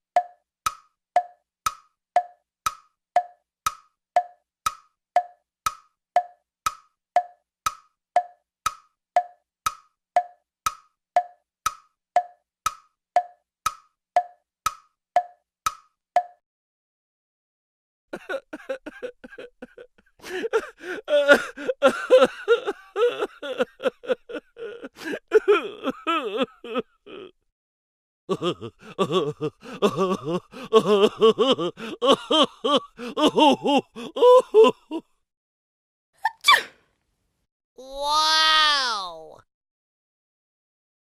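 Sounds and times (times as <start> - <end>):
comedy voice choppy pulses: 28.3 - 35.0, 37.8 - 39.4.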